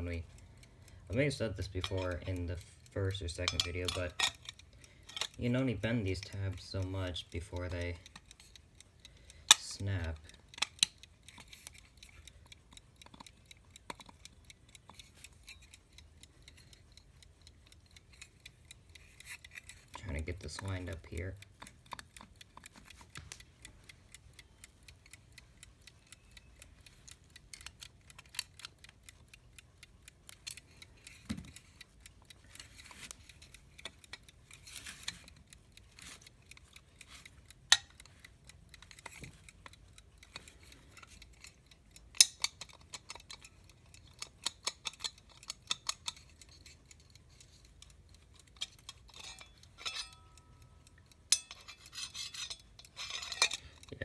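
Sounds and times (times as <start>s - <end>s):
small metallic clicks and taps: 0.0s - 54.0s
faint alarm clock bell ring: 48.6s - 53.7s.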